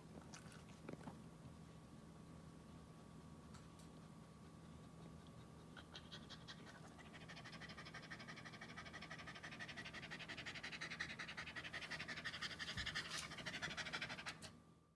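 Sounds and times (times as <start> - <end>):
dog panting rapidly: 4.1 - 14.5.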